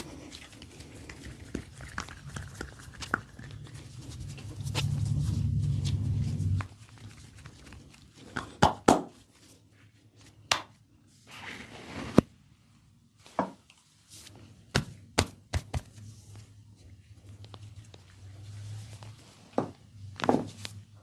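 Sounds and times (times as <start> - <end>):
hands slapping skin: 8.3 - 9.2, 10.5 - 10.8, 14.7 - 16.0.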